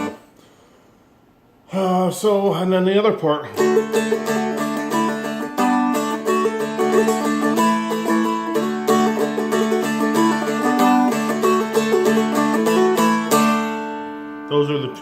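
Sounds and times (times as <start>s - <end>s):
dulcimer playing jig melody: 3.6s - 14.1s.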